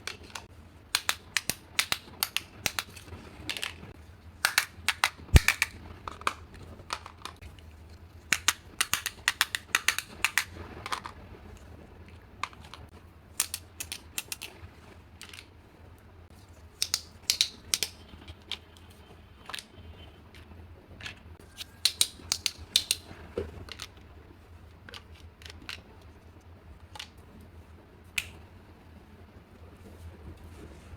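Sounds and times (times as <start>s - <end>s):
plastic toy pieces clicking: 0.0s - 3.8s, 4.4s - 7.4s, 8.3s - 11.2s, 12.4s - 14.6s, 15.2s - 15.5s, 16.8s - 18.6s, 21.0s - 24.0s, 24.8s - 25.9s.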